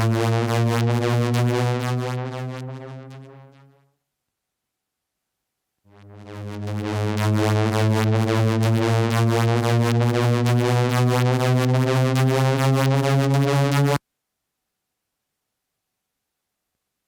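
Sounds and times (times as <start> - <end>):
buzzy synthesizer drone: 0.0 - 3.8, 5.9 - 14.0.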